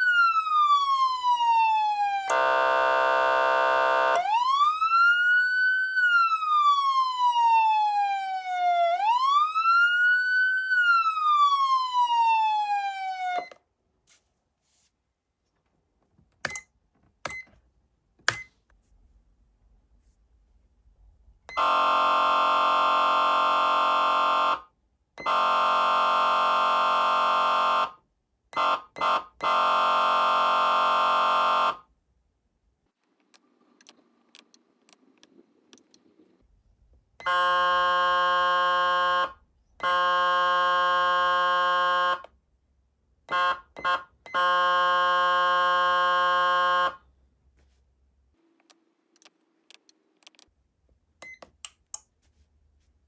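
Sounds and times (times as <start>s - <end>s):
electronic air horn blasts: 2.3s - 4.3s, 21.5s - 28.0s, 28.6s - 31.8s, 37.2s - 42.3s, 43.3s - 47.0s
sharp clicks: 48.6s - 50.5s.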